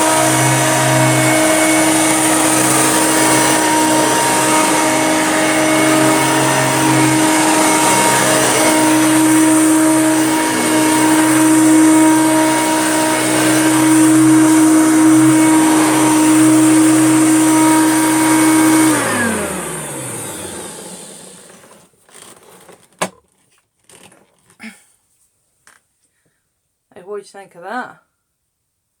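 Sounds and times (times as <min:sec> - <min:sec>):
vacuum cleaner motor whine: 0:00.0 - 0:22.7.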